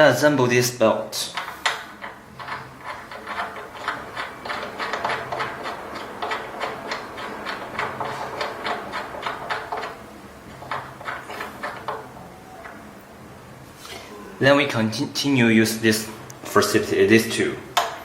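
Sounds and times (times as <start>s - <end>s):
hand tools clicking on metal: 1.2s - 12.9s.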